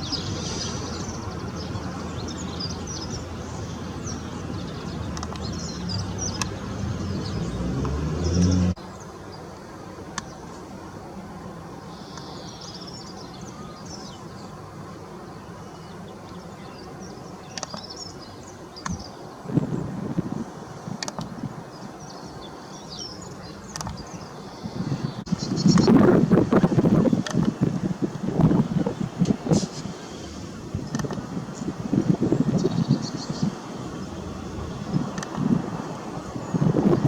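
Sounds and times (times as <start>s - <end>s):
small birds chirping: 0.0s - 9.5s, 11.8s - 27.7s, 28.3s - 37.0s
light clicks: 5.1s - 5.6s.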